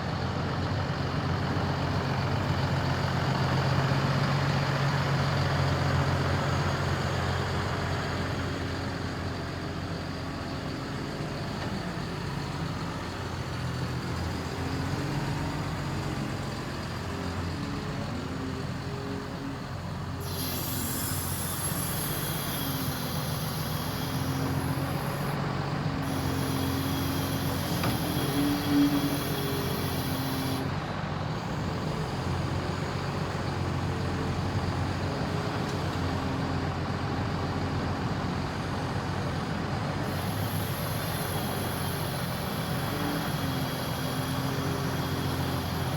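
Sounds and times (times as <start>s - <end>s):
excavator diesel engine running: 0.0s - 45.9s
high thin hiss: 20.2s - 25.4s, 26.0s - 30.7s, 40.1s - 45.9s.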